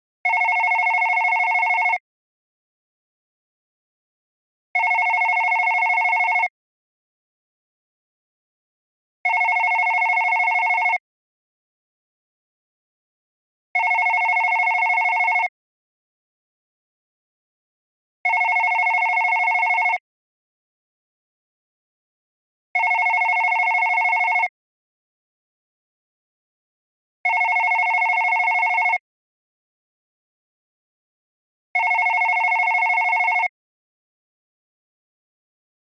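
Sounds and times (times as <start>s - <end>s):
telephone electronic ringtone: 0.3s - 2.0s, 4.8s - 6.5s, 9.3s - 11.0s, 13.8s - 15.5s, 18.3s - 20.0s, 22.8s - 24.5s, 27.3s - 29.0s, 31.8s - 33.5s.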